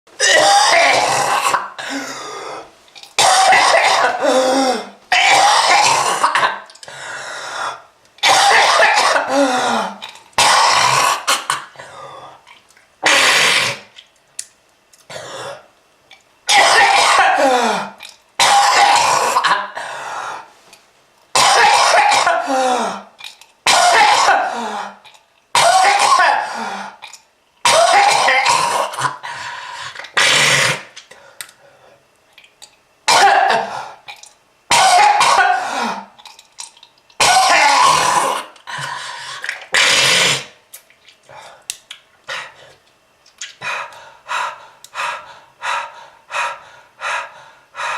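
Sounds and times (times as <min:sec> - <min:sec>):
person coughing hard: 0:00.2 - 0:02.0, 0:03.2 - 0:06.7, 0:08.2 - 0:11.8, 0:13.0 - 0:13.8, 0:16.5 - 0:19.8, 0:21.4 - 0:23.0, 0:23.6 - 0:25.0, 0:25.6 - 0:27.0, 0:27.6 - 0:29.2, 0:33.1 - 0:33.9, 0:34.7 - 0:36.1, 0:37.2 - 0:38.6.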